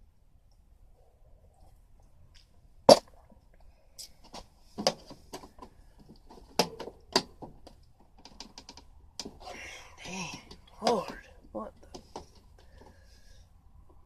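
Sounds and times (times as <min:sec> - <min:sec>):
air conditioner parts clicking: 0:04.2 - 0:09.4.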